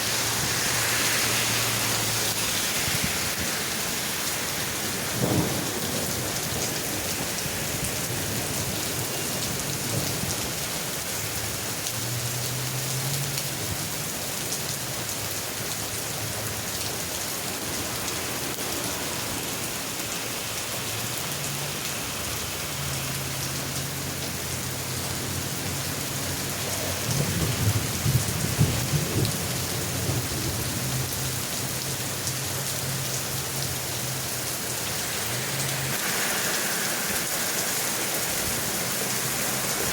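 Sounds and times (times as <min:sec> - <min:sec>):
heavy rain: 0:00.0 - 0:39.9
thunder rumbling: 0:04.8 - 0:09.2, 0:26.9 - 0:31.0.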